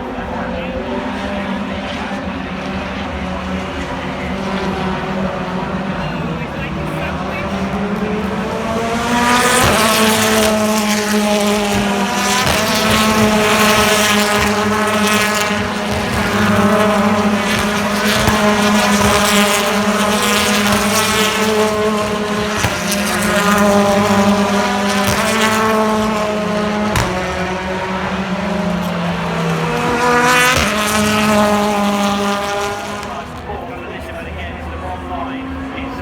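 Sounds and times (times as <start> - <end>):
racing car engines revving: 0.0 - 36.0.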